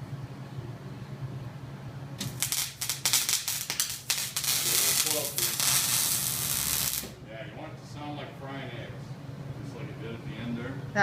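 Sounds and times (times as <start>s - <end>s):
welding arc crackling: 2.2s - 7.2s.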